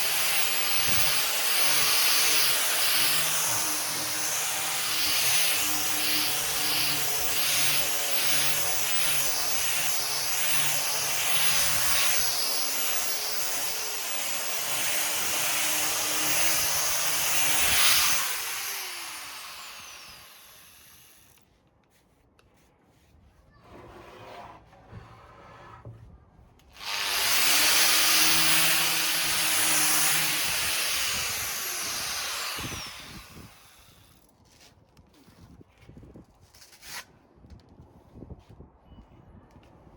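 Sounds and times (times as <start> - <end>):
orbital sander on wood: 0.0 - 21.1, 26.8 - 34.1.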